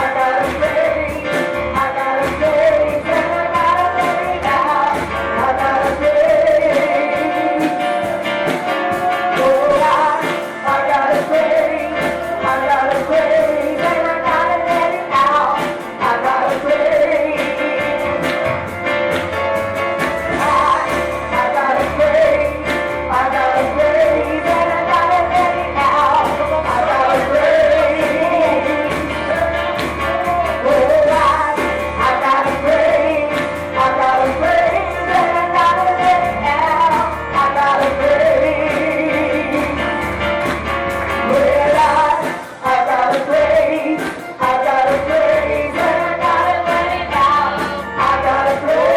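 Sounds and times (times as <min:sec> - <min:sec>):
voices singing: 0:00.0 - 0:18.6, 0:20.3 - 0:39.8, 0:41.2 - 0:48.9
band playing worship music: 0:00.0 - 0:48.9.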